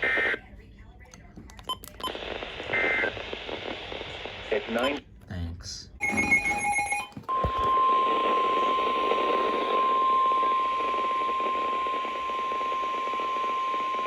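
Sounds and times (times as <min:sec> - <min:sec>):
radio static: 0:00.0 - 0:00.4, 0:01.6 - 0:05.0
steady alarm tone: 0:06.0 - 0:08.0.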